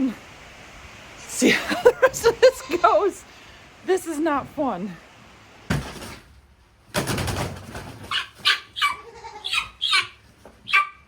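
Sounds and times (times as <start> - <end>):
guinea fowl harsh calls: 8.1 - 10.9.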